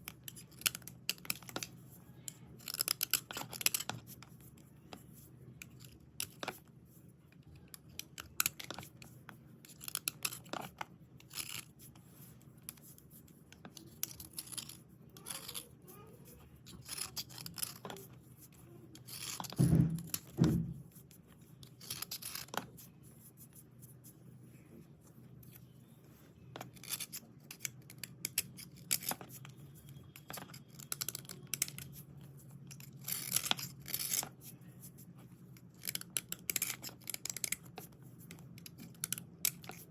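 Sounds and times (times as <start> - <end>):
slate pencils scraping on slate: 13.8 - 20.3, 26.6 - 32.1, 32.7 - 35.0.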